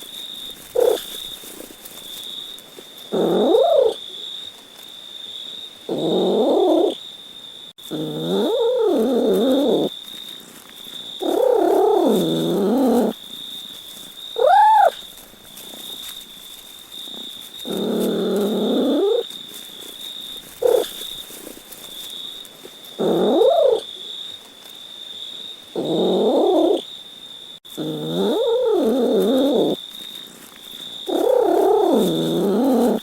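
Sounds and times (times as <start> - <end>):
cat meowing and yowling: 3.2 - 4.0, 14.4 - 15.0, 23.1 - 23.8.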